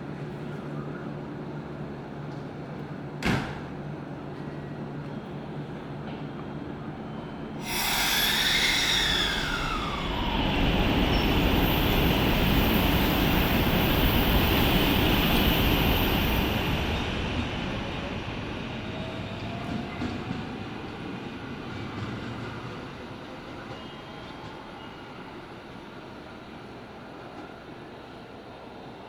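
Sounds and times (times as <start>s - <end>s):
electric train passing: 7.6s - 23.8s.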